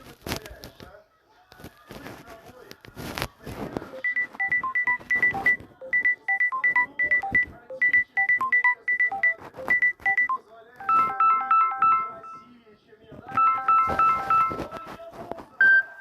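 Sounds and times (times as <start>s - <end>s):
phone ringtone melody: 3.9s - 12.6s, 13.3s - 14.9s.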